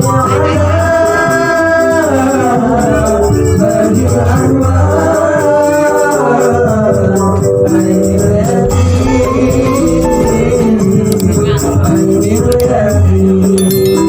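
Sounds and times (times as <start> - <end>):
person singing devotional song: 0.0 - 14.0
low drum beat: 7.8 - 12.9.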